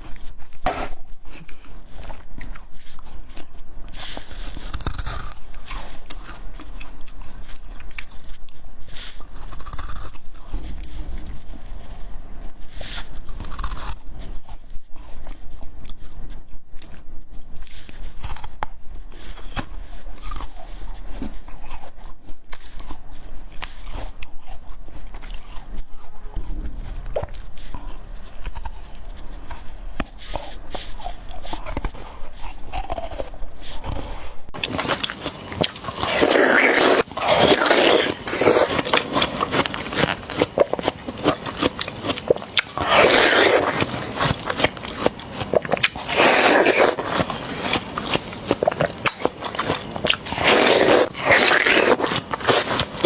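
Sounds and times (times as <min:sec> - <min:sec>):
chewing watermelon wet crunches: 0:01.2 - 0:53.0.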